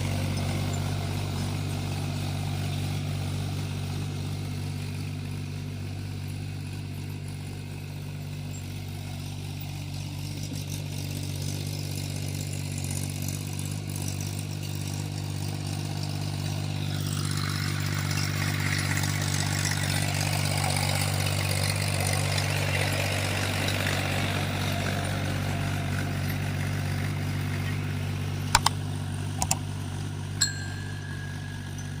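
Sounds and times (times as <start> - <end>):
tractor diesel engine running: 0.0 - 32.0
sharp clicks: 28.5 - 28.8, 29.4 - 29.7
short ding: 30.4 - 32.0.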